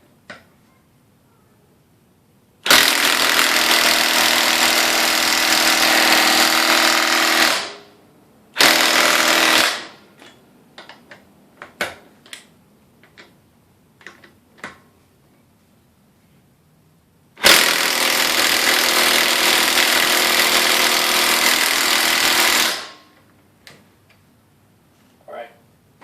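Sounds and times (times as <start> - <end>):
impact wrench hammering: 2.6 - 8.0, 8.6 - 11.0, 17.4 - 23.2.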